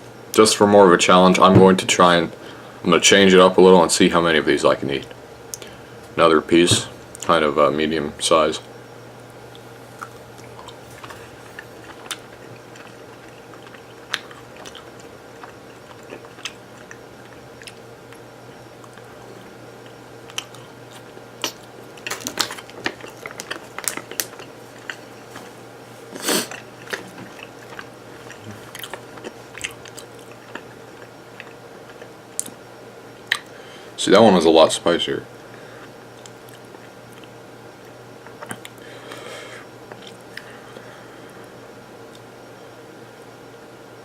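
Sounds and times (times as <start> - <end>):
steady low hum: 0.0 - 44.0
person chewing: 9.5 - 32.6, 39.9 - 40.9.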